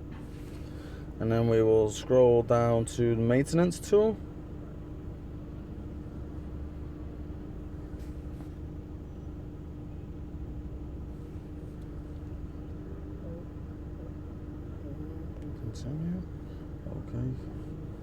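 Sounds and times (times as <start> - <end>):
faint hum: 0.0 - 18.0
low background rumble: 0.0 - 18.0.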